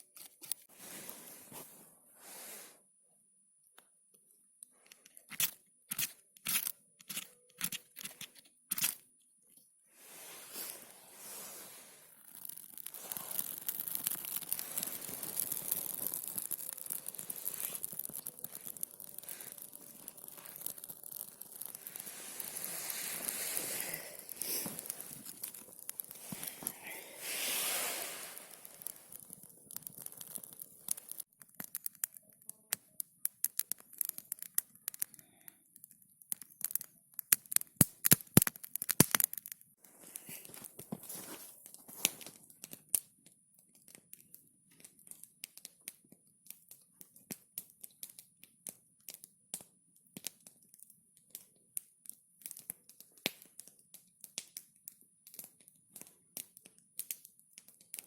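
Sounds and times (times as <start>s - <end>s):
sharp clicks and pops: 4.6s - 9.7s, 12.1s - 58.0s
rustling and tearing: 10.0s - 31.3s, 39.9s - 42.4s.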